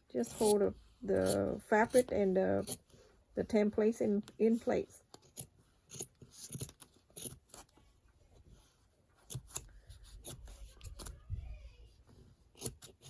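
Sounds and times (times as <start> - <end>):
scissors snipping fabric: 0.2 - 3.0, 3.6 - 7.8, 9.1 - 11.2, 12.5 - 13.0.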